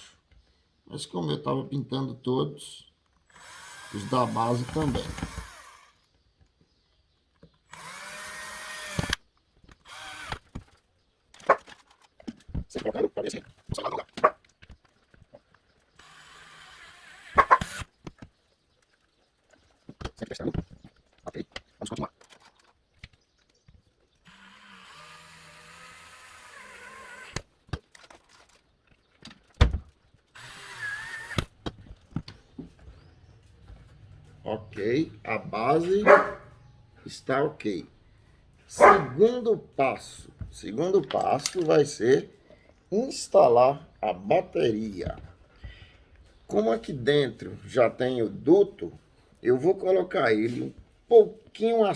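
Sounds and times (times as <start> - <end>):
electric drill driving screws: 3.2 - 6.1, 7.7 - 10.7, 15.9 - 18.0, 24.2 - 28.4, 30.3 - 31.8.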